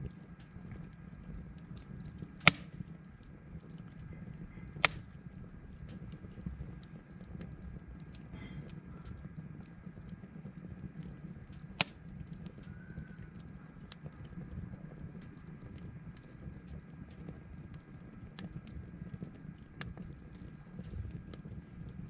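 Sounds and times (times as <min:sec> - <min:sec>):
low steady rumble: 0:00.0 - 0:22.0
wood fire crackling: 0:00.0 - 0:22.0
loud sharp fire pop: 0:02.4 - 0:02.8, 0:04.8 - 0:05.1.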